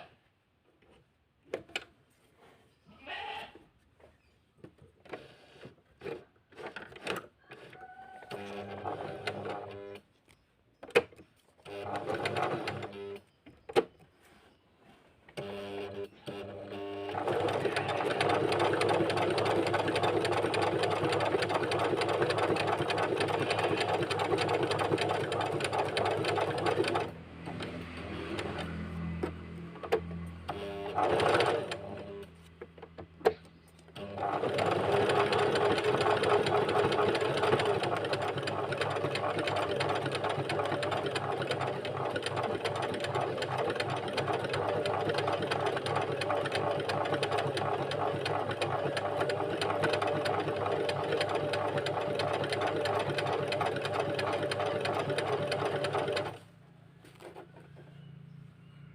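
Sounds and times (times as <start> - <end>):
sewing machine stitching: 5.1 - 10.0, 11.6 - 13.2, 15.4 - 32.3, 33.9 - 56.4.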